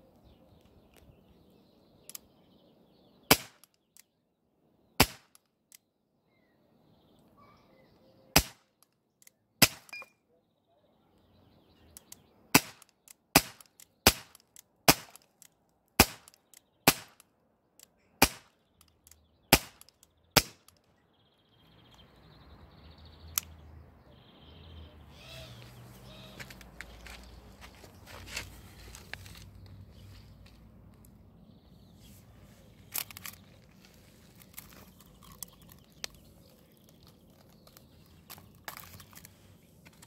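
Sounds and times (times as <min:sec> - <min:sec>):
air pistol shots: 0:03.3 - 0:03.7, 0:05.0 - 0:05.4, 0:08.3 - 0:08.7, 0:09.6 - 0:10.1, 0:12.5 - 0:15.2, 0:16.0 - 0:17.2, 0:18.2 - 0:18.6, 0:19.5 - 0:20.8.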